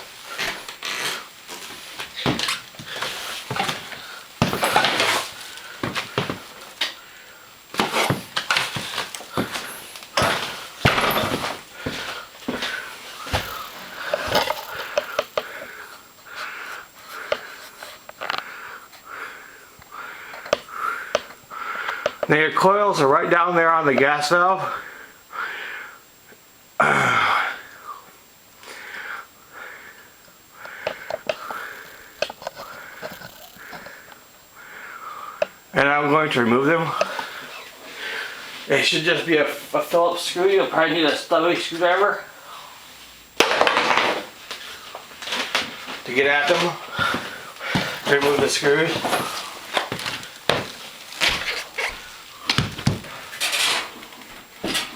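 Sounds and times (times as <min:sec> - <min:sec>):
man breathing heavily: 0:02.7 - 0:07.7, 0:08.6 - 0:22.3, 0:24.6 - 0:26.1, 0:26.8 - 0:35.7, 0:36.8 - 0:38.6, 0:46.8 - 0:50.6.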